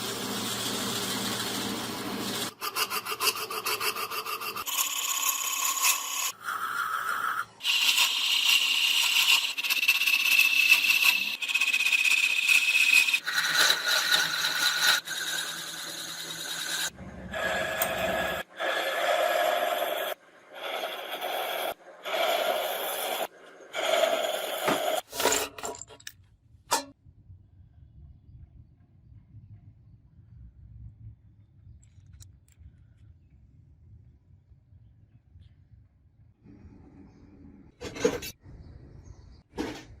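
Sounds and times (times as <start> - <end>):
power tools grinding and scraping: 0.0 - 6.4, 7.4 - 26.1.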